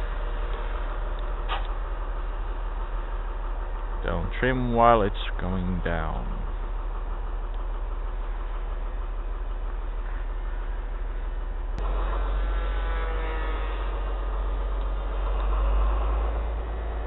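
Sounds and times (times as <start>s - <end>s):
model plane propeller whine: 7.3s - 17.0s.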